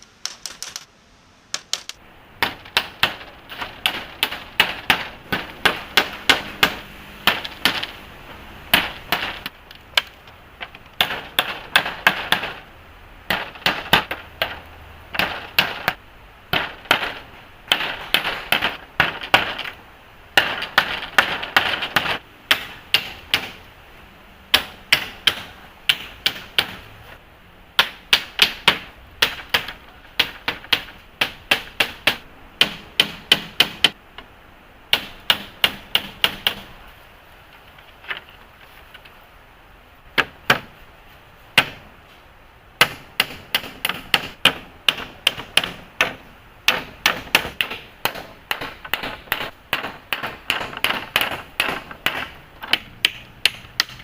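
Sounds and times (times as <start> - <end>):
rapid sharp knocks: 1.6 - 8.0, 8.7 - 12.7, 13.3 - 23.7, 24.5 - 26.9, 27.8 - 34.0, 34.9 - 36.7, 42.8 - 54.0.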